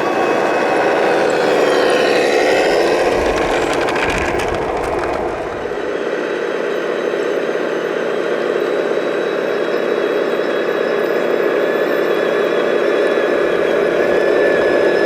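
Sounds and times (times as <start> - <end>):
electric motors whirring: 0.6 - 5.9
clicking and scraping: 0.8 - 6.0.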